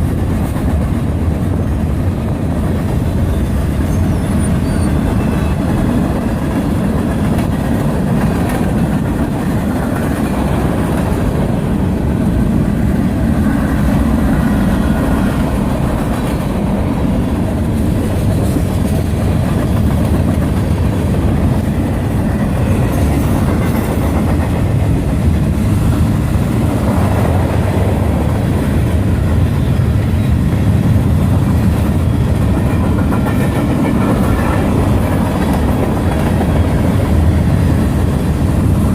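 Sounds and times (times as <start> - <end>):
freight train rattling past: 0.0 - 38.9
wheels clicking over rail joints: 0.0 - 38.9.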